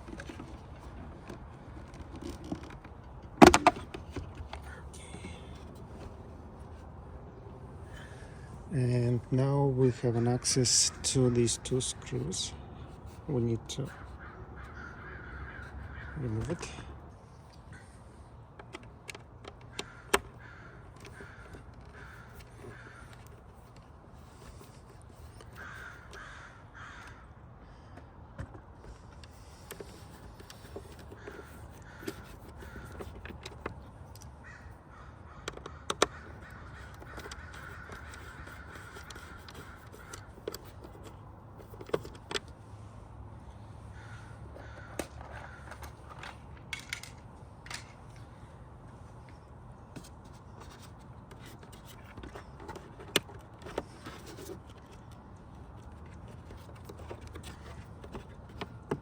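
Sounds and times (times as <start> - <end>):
hand work clicks and knocks: 0.0 - 4.6
crows cawing: 13.9 - 17.0, 19.7 - 23.7, 25.4 - 28.1, 29.4 - 33.6, 34.3 - 41.2, 43.5 - 46.4.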